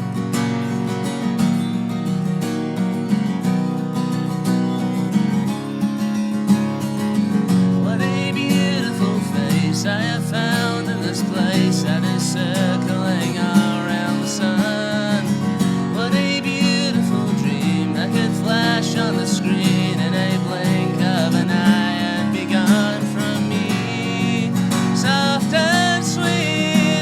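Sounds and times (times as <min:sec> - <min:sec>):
acoustic guitar strumming: 0:00.0 - 0:27.0
person singing: 0:07.8 - 0:15.3, 0:16.0 - 0:27.0.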